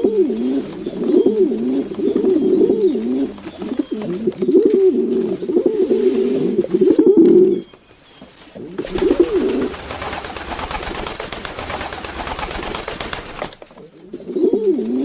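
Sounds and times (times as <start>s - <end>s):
pigeons cooing: 0.0s - 15.0s
rustling noise: 3.0s - 14.0s.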